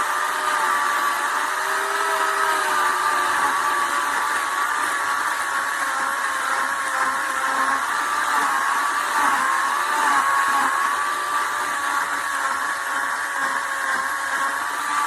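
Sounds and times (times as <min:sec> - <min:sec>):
electric chainsaw whining: 0:00.0 - 0:15.0.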